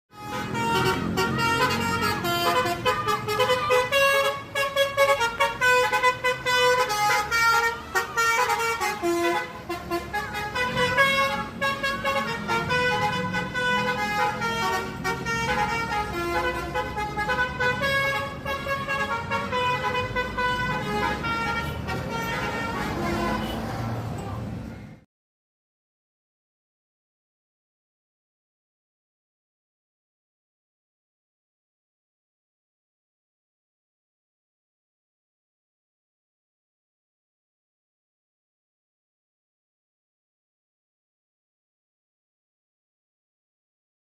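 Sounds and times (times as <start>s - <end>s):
multi-tone bus horn tune: 0.1s - 24.1s.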